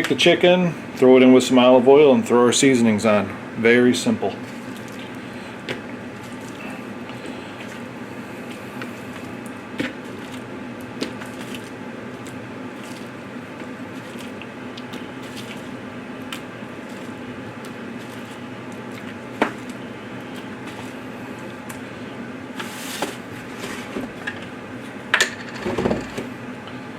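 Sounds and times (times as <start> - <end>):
steady low hum: 0.0 - 26.9
wet squishing of raw chicken: 9.2 - 21.8.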